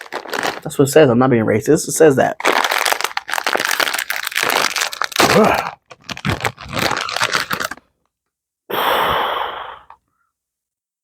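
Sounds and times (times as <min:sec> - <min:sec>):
plastic bag tearing open: 0:00.0 - 0:01.0, 0:02.4 - 0:07.9
plastic bag crinkling: 0:00.0 - 0:07.9.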